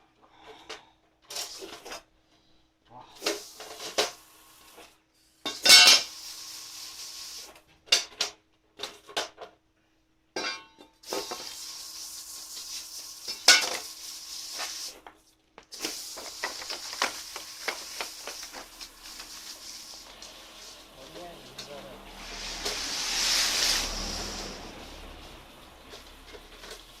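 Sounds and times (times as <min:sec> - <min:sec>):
water washing hiss: 0:03.2 - 0:04.9, 0:05.6 - 0:07.6, 0:11.0 - 0:15.0, 0:15.7 - 0:27.0.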